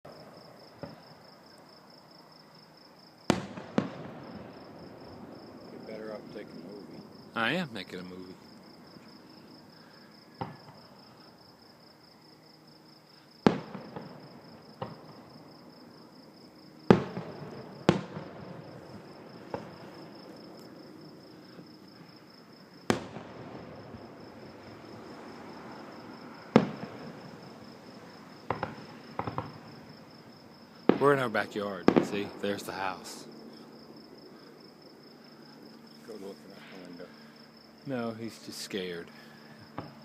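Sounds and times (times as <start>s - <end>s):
crickets chirping: 0.0s - 40.0s
fireworks bangs with crackle: 0.8s - 1.2s, 3.3s - 8.3s, 10.3s - 11.1s, 13.4s - 15.4s, 16.9s - 20.8s, 22.8s - 30.2s, 30.8s - 33.3s, 39.6s - 40.0s.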